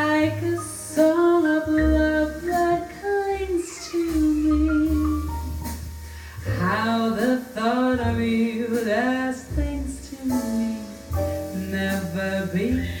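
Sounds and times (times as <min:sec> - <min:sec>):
person singing melody: 0:00.0 - 0:05.7
steady bass line: 0:00.0 - 0:13.0.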